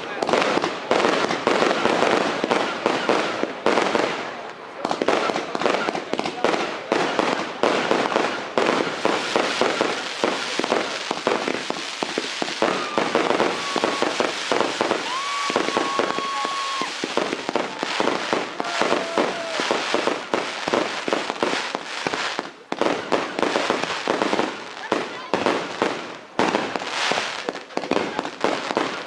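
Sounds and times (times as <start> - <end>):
fireworks bangs and crackles: 0.0 - 29.0
firework whistling: 7.8 - 24.6.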